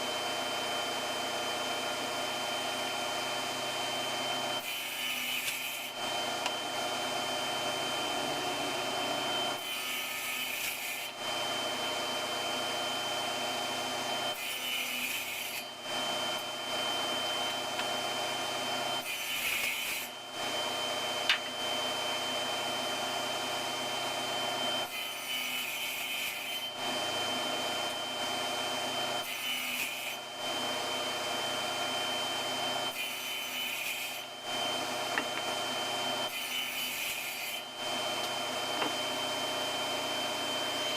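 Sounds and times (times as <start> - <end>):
table saw motor whine: 0.0 - 40.9
saw blade cutting wood: 4.6 - 6.6, 8.1 - 11.2, 14.3 - 15.7, 19.0 - 20.1, 24.8 - 26.9, 36.2 - 39.0.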